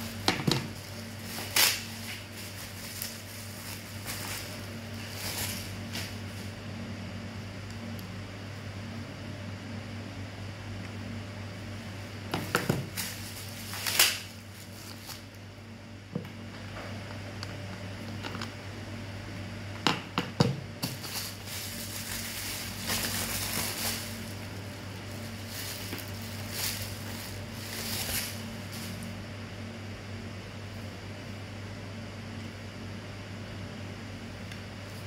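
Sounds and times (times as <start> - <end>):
packaging rustling and crinkling: 0.0 - 6.5, 12.4 - 15.4, 20.8 - 29.2
steady low hum: 0.0 - 35.0.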